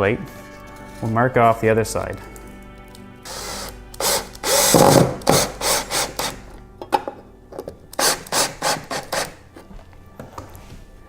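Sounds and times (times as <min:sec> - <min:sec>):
pencil scratching on wood: 0:08.0 - 0:09.4.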